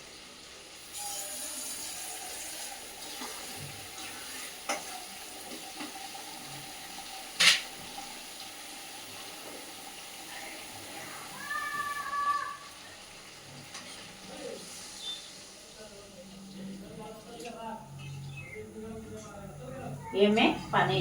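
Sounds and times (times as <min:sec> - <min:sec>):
paste sizzling in hot oil: 0:00.0 - 0:16.5.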